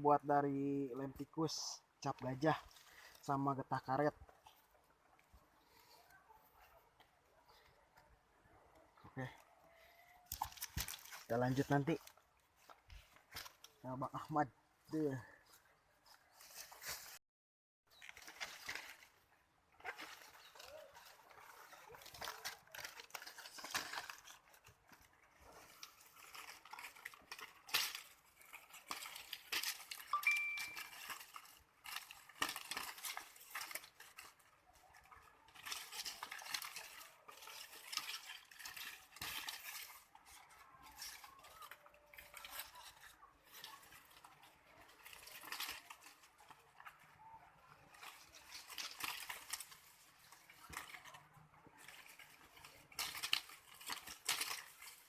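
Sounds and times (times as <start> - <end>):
hard objects clinking and scraping: 19.8 - 55.0.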